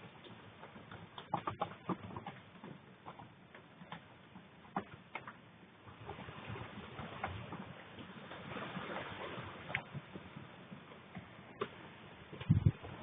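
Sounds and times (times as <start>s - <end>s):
rain and wind hiss: 6.0s - 10.7s.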